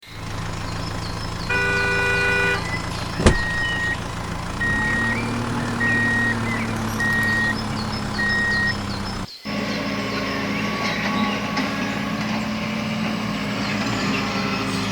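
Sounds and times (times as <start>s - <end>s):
toy truck engine rumble: 0.0s - 14.9s
reversing beeps: 3.3s - 4.0s, 4.6s - 8.8s.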